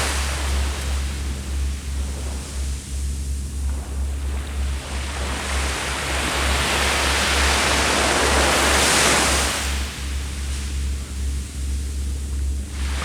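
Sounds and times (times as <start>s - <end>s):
low rumble of surf: 0.0s - 13.0s
ocean wave washing on shore: 4.7s - 10.6s, 12.7s - 13.0s.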